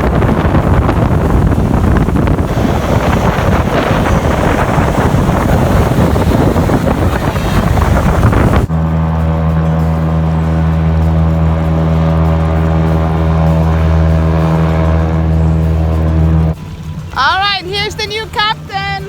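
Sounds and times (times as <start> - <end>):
wind buffeting microphone: 0.0 - 18.4
boat engine running: 0.0 - 19.0.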